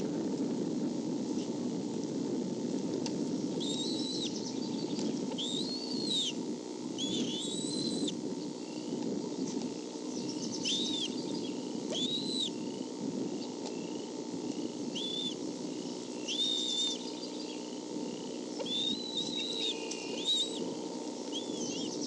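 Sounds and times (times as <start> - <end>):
eagle whistled calls: 3.5 - 6.4, 7.0 - 8.9, 10.1 - 12.7, 14.9 - 17.7, 18.4 - 22.0.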